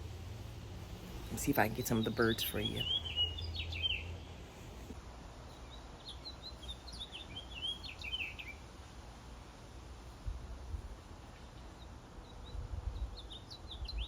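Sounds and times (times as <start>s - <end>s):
low outdoor rumble: 0.0s - 5.0s
songbird chirping and twittering: 1.0s - 4.6s, 5.4s - 8.7s, 11.3s - 14.0s.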